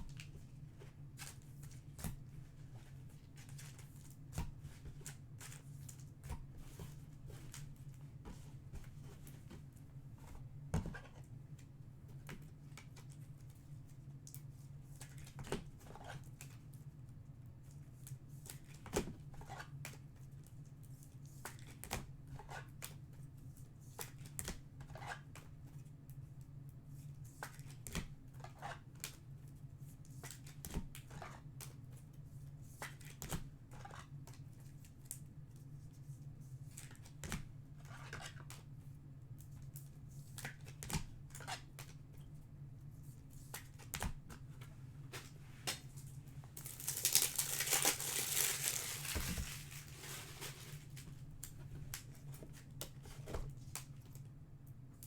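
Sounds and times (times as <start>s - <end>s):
cards and wrappers rustling: 46.5s - 51.3s.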